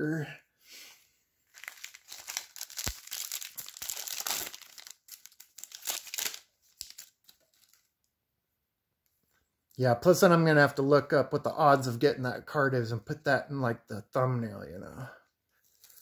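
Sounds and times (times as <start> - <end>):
plastic wrapper crinkling and tearing: 1.4 - 8.0, 15.6 - 16.0.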